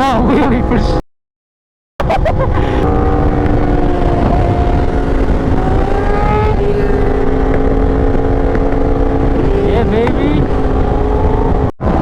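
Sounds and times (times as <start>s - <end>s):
low wind rumble: 2.0s - 12.0s
motorcycle engine running: 2.4s - 11.7s.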